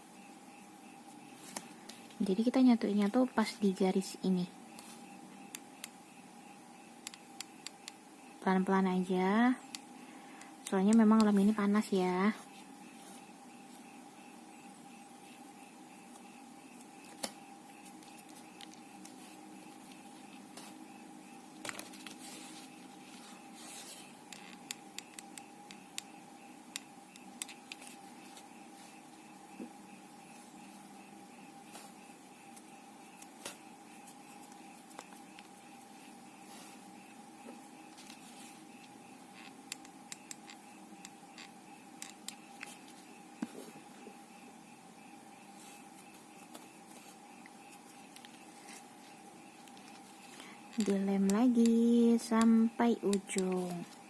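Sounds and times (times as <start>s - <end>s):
steady faint hum: 0.0s - 54.0s
sharp little clicks and taps: 7.0s - 8.0s, 38.8s - 42.8s.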